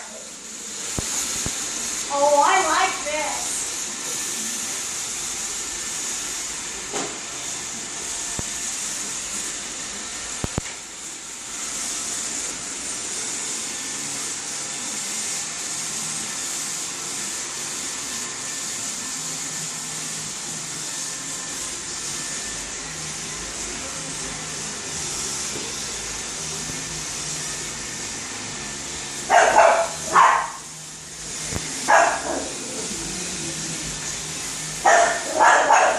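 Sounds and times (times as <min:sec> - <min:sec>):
robot vacuum whirring: 0:23.9 - 0:35.9.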